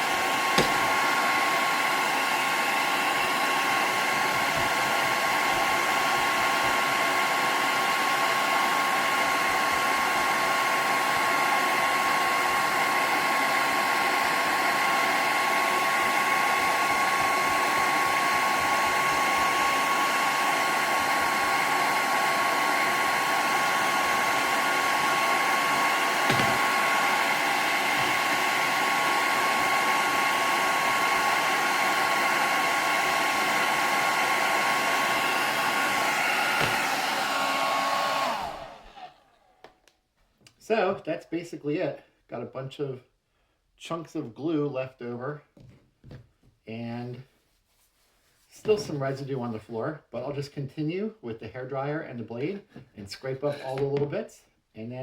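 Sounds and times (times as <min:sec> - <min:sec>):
hairdryer blowing: 0:00.0 - 0:39.8
brief knock: 0:00.6 - 0:01.0, 0:26.3 - 0:26.7.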